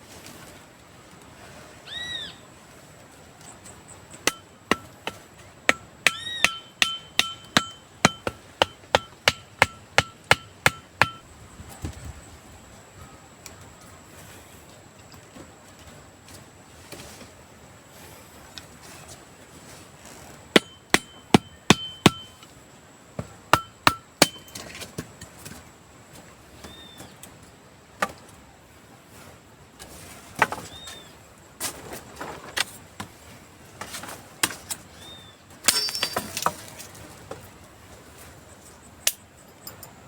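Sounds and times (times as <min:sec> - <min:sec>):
metal tool striking wood: 0:04.2 - 0:11.2, 0:20.5 - 0:22.4, 0:23.5 - 0:24.6, 0:35.7 - 0:36.7.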